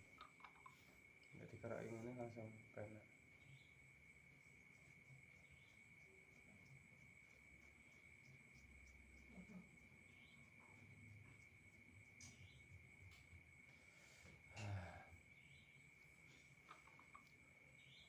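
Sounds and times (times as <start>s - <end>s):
crickets trilling: 0.0s - 18.0s.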